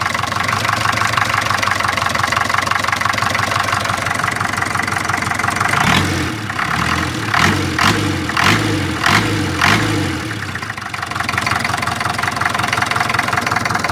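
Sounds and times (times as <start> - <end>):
car engine idling: 0.0 - 13.9.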